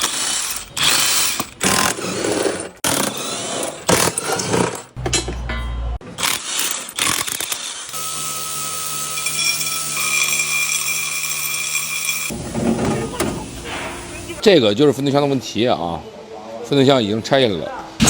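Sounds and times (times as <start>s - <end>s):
tool clatters: 3.9s - 7.2s
power tool whining: 6.2s - 14.4s.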